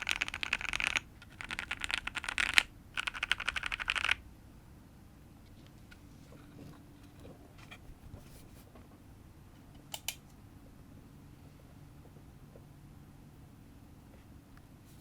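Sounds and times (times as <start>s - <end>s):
fast mechanical keyboard typing: 0.0s - 4.2s.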